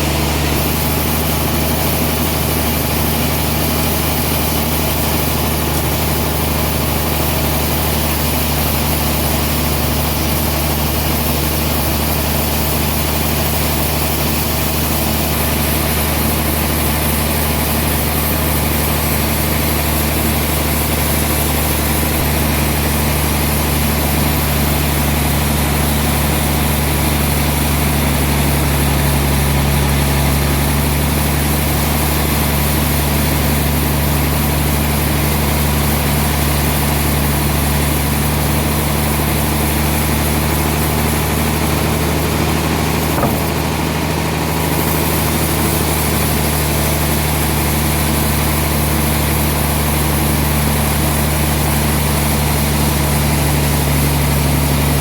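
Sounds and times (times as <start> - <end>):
sawmill machinery humming: 0.0 - 55.0
short knock: 43.2 - 43.8.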